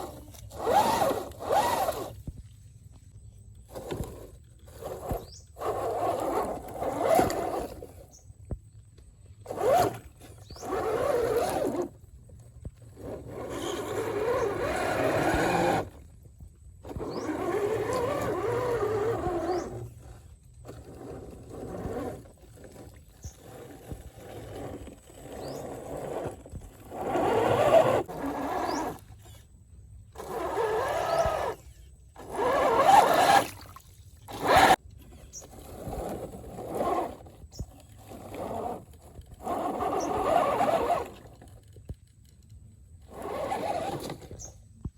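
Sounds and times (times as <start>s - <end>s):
electric motor whining: 0.0s - 2.4s, 3.7s - 8.1s, 9.5s - 12.0s, 12.9s - 16.0s, 16.8s - 29.4s, 30.1s - 33.6s, 34.3s - 34.8s, 38.2s - 41.3s, 43.1s - 44.5s
scraping over rough ground: 0.0s - 44.9s.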